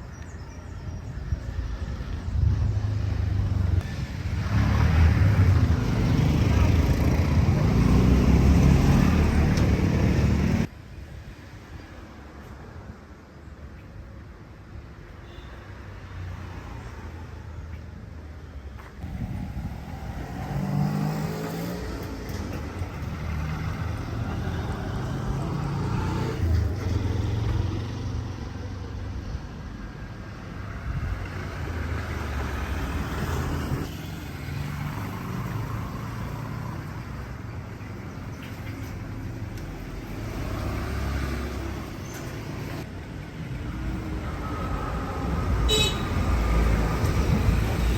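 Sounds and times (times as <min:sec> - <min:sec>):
motor vehicles passing: 0:01.5 - 0:10.7, 0:18.8 - 0:47.9
engine revving: 0:04.4 - 0:10.7, 0:19.0 - 0:22.4, 0:23.1 - 0:28.3, 0:40.1 - 0:42.0.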